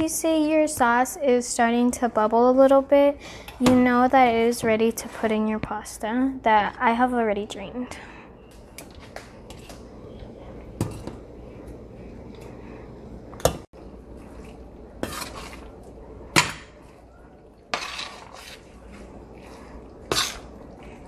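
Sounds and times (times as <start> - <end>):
low steady background noise: 0.0 - 21.0
utensil scraping a cooking pan: 8.0 - 13.7, 15.0 - 15.7, 17.7 - 20.6.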